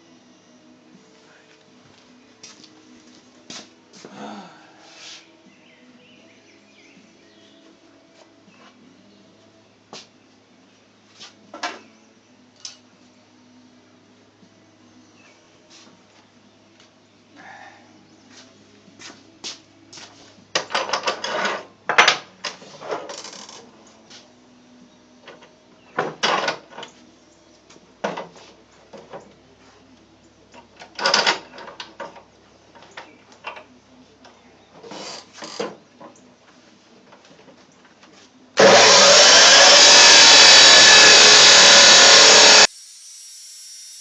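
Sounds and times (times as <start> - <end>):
power tool running: 38.6 - 44.0.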